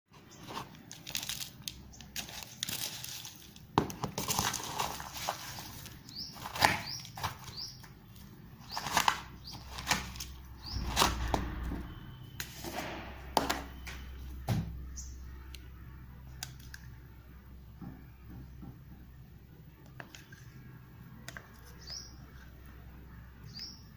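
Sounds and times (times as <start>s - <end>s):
short rising squeaks: 10.4s - 14.3s.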